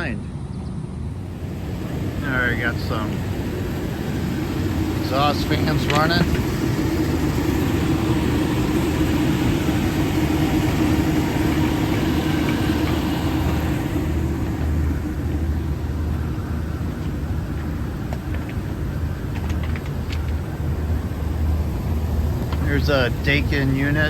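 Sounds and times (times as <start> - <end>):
exhaust fans humming: 0.0 - 24.0
rushing air hiss: 1.2 - 18.0.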